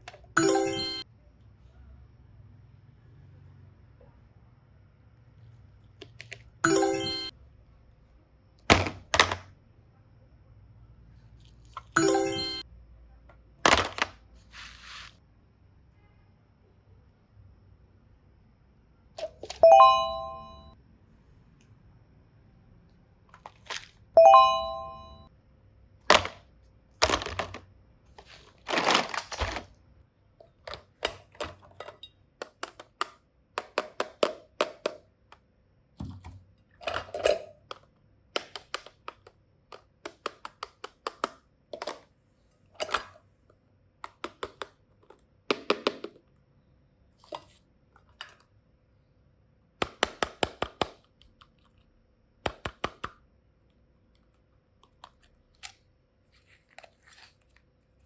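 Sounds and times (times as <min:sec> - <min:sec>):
plastic cases clicking and knocking: 0:26.1 - 0:27.7, 0:30.6 - 0:35.1, 0:36.0 - 0:42.1
plastic rustle: 0:28.2 - 0:29.7.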